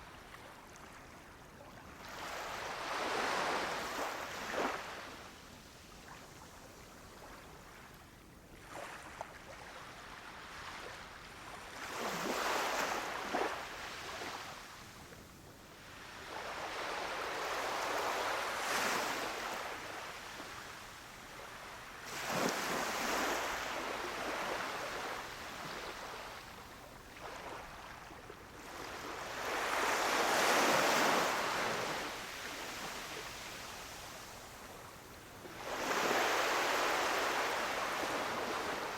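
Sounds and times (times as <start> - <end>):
waves washing onto beach: 15.9 - 38.9.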